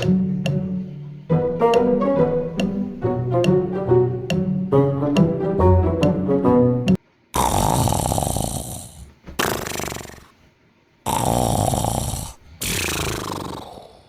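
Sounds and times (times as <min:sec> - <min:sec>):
man snoring loudly: 0:07.4 - 0:10.3, 0:11.1 - 0:14.0.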